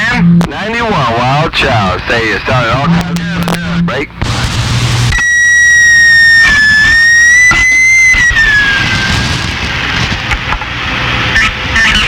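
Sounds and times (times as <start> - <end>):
radio static: 0.0 - 10.5, 11.2 - 12.0
wavering whistle tone over radio: 2.6 - 4.1, 5.1 - 9.2, 11.3 - 12.0.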